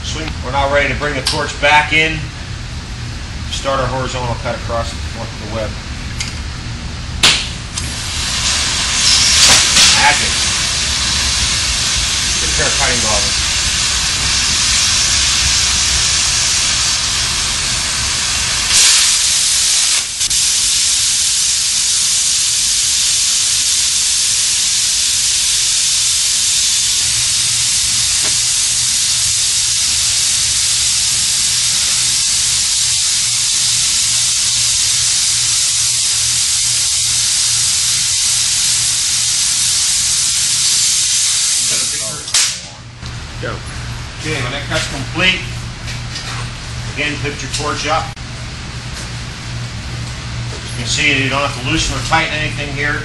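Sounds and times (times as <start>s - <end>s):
cutting torch hissing: 7.2s - 42.8s.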